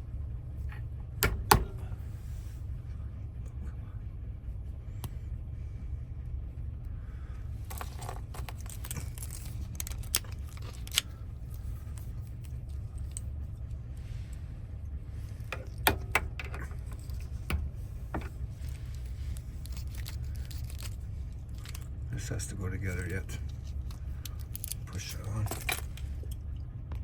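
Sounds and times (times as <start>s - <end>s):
steady low hum: 0.0s - 27.0s
metal lock parts clicking: 1.2s - 1.9s, 7.7s - 13.3s, 15.4s - 26.4s.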